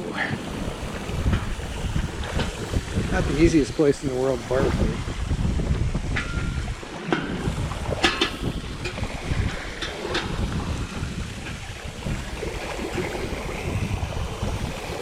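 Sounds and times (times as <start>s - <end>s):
sea rushing: 0.0s - 15.0s
wind buffeting microphone: 0.0s - 15.0s.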